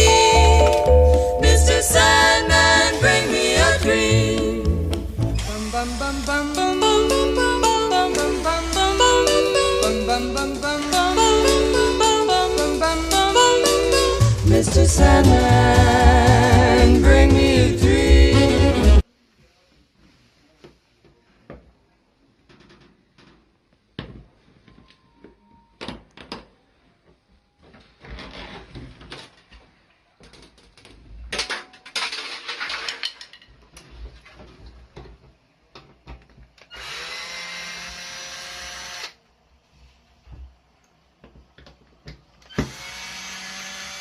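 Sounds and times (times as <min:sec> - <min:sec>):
power drill running: 0:36.7 - 0:39.2, 0:42.6 - 0:44.0.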